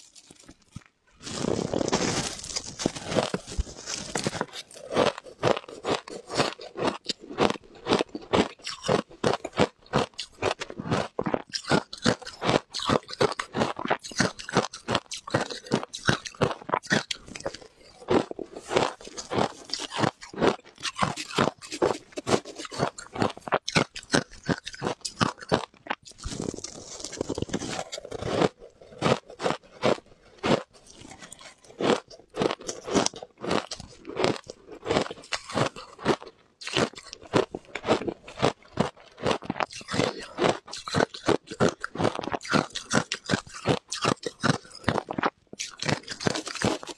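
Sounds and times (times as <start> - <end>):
person crunching ice: 0.0 - 46.9.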